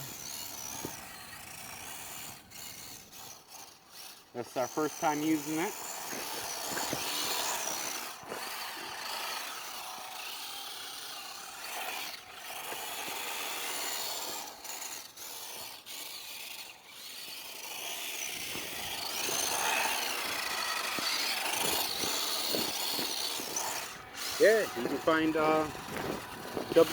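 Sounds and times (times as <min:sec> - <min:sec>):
small electric motor whining: 0:00.0 - 0:26.9.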